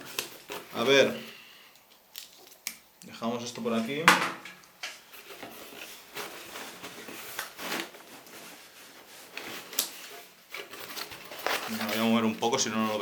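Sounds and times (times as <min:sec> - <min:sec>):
packing paper rustling: 0:00.0 - 0:01.4, 0:05.0 - 0:13.0.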